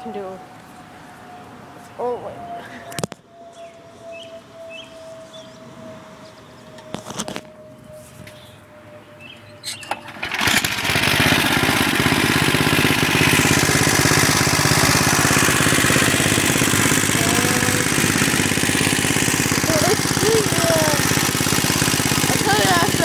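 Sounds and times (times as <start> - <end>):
mower engine running: 9.8 - 23.0
starter rope pull: 9.9 - 23.0.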